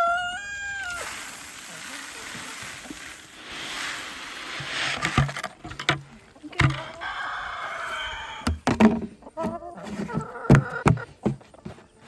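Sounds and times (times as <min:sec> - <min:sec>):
drawn-out wavering squeak: 0:00.0 - 0:05.8, 0:06.4 - 0:08.7
rustling: 0:00.0 - 0:12.0
sharp knocks with low thuds: 0:08.4 - 0:11.9.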